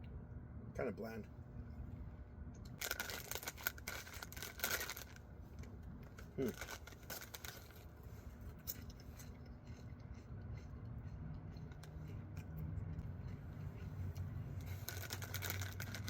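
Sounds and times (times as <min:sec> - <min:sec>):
low steady hum: 0:00.0 - 0:16.0
potato chips crunching: 0:02.6 - 0:16.0
chip bag crinkling: 0:02.7 - 0:08.0, 0:14.5 - 0:16.0.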